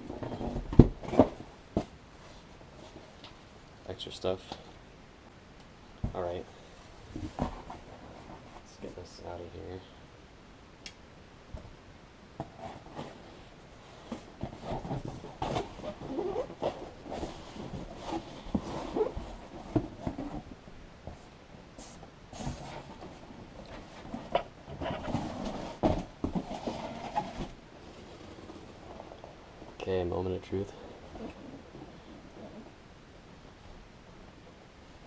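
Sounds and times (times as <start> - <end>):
packaging rustling and scraping: 12.4 - 20.6, 21.9 - 29.4.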